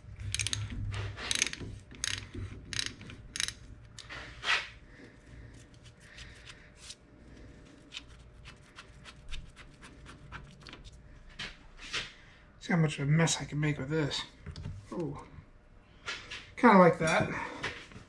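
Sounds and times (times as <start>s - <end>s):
hand tool clicks and scraping: 0.3s - 4.7s.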